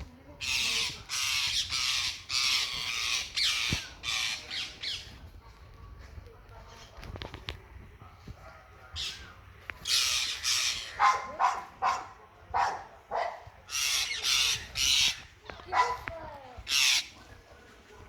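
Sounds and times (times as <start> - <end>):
parrots squawking: 0.4 - 5.1, 9.0 - 17.2
dog barking: 10.9 - 13.6, 15.7 - 16.1.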